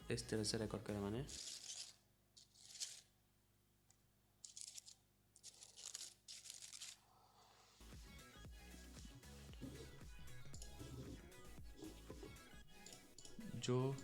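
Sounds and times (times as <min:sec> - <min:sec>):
music: 0:00.0 - 0:01.3, 0:07.8 - 0:14.0.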